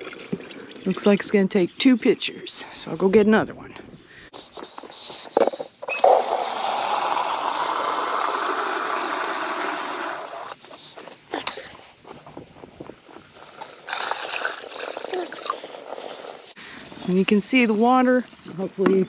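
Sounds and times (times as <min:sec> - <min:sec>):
water running: 0:04.4 - 0:16.6
water splash: 0:13.4 - 0:16.6.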